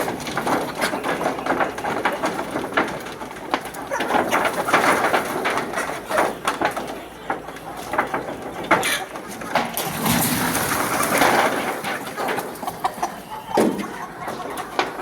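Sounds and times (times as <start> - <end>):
chickens clucking: 0.0 - 15.0.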